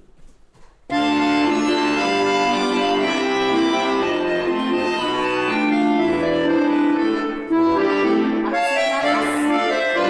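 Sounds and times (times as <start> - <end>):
accordion playing folk-dance tune: 0.9 - 10.0.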